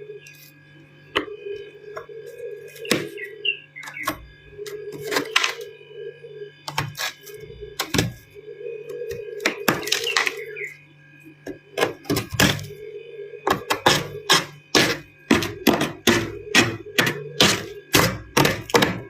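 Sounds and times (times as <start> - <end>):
faint low hum: 0.0 - 19.0.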